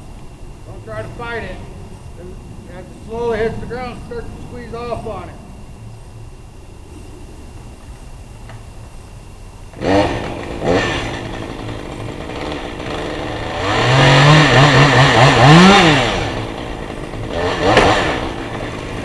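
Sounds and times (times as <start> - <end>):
chainsaw revving: 9.7 - 19.0.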